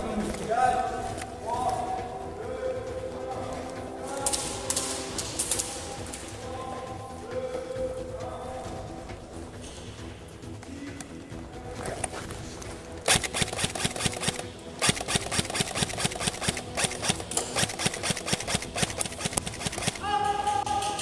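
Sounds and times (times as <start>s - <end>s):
airsoft gun firing: 13.1s - 20.1s.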